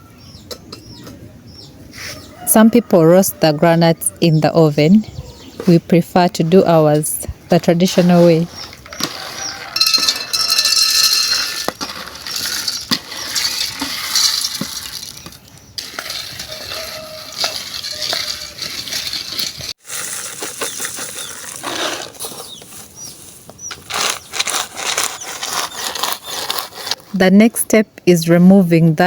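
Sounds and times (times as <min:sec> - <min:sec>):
nuts rattling in a container: 0:09.1 - 0:22.4.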